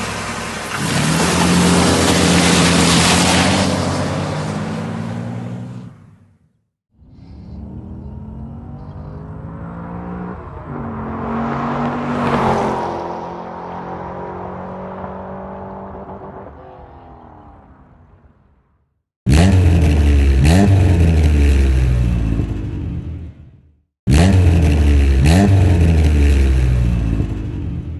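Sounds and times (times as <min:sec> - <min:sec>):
car passing by: 0:00.0 - 0:06.0, 0:07.2 - 0:17.6
engine revving: 0:06.9 - 0:17.2, 0:19.3 - 0:27.9.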